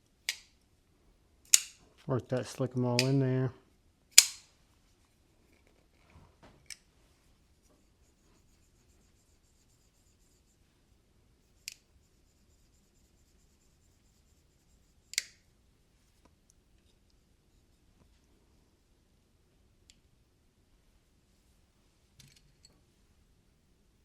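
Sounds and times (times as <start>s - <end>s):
knife blade metallic clicks: 4.2s - 4.4s
folding knife blade snapping: 4.2s - 4.5s.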